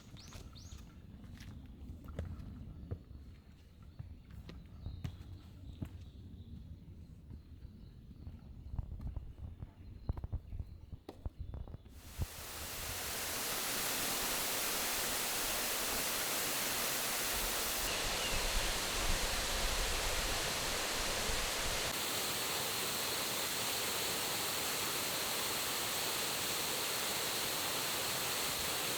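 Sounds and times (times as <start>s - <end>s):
waterfall rushing: 12.0s - 28.9s.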